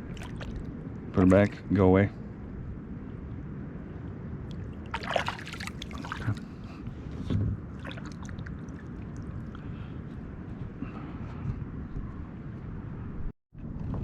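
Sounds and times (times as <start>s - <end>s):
water splashing: 0.0s - 1.6s, 4.5s - 6.6s, 7.7s - 9.6s.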